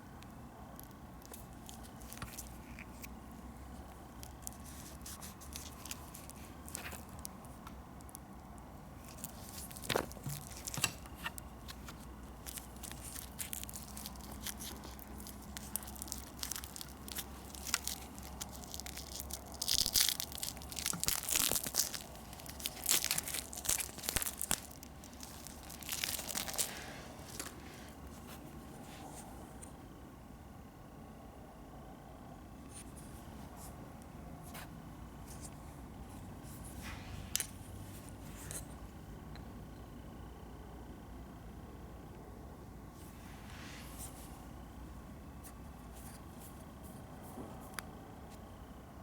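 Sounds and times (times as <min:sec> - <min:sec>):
packaging crinkling and tearing: 0:00.8 - 0:03.2, 0:03.8 - 0:08.3, 0:09.0 - 0:27.8.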